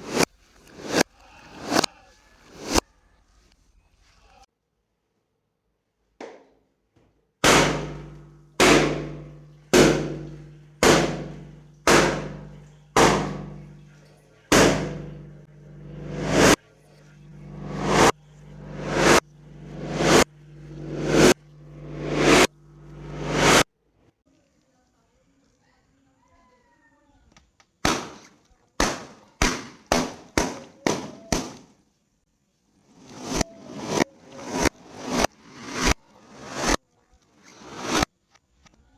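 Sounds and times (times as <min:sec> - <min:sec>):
reversed pop: 0:00.0 - 0:01.9, 0:02.5 - 0:02.8, 0:07.4 - 0:13.6, 0:14.5 - 0:23.6.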